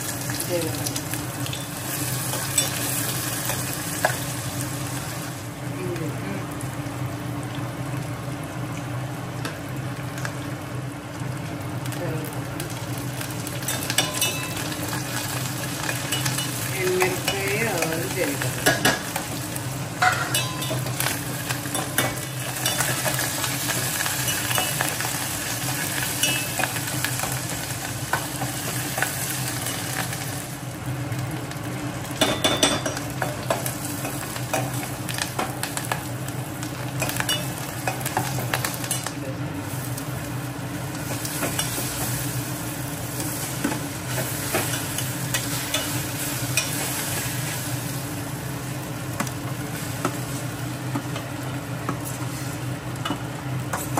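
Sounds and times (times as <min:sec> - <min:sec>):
spices sizzling in hot oil: 0:00.0 - 0:53.9.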